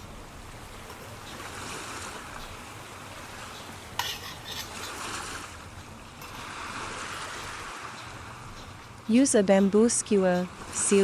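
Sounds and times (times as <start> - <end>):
broth pouring and splashing: 0.0 - 11.0.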